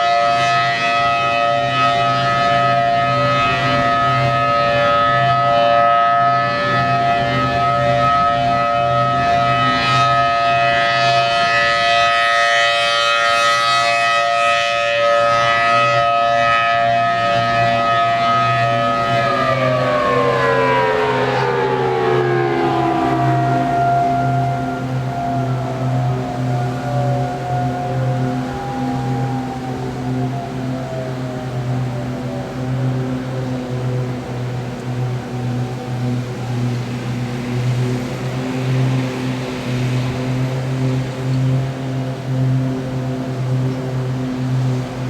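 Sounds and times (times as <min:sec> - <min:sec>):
warning siren: 0:00.0 - 0:45.0.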